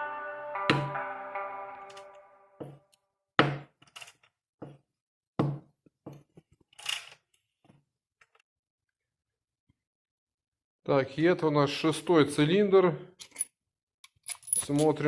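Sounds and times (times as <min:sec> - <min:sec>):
metal tools clinking and knocking: 0:14.1 - 0:15.0.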